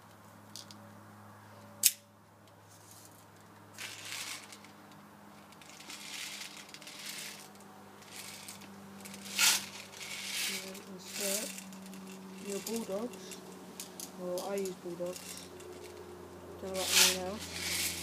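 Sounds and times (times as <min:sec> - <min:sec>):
rustling and crinkling handling: 0:05.4 - 0:16.0.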